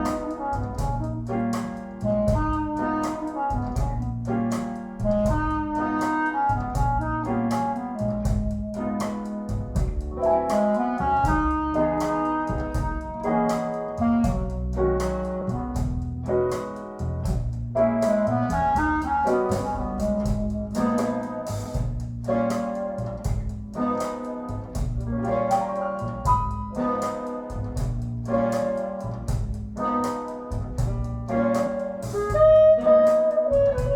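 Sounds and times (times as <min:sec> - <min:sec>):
jazz music through loudspeakers: 0:00.0 - 0:33.9.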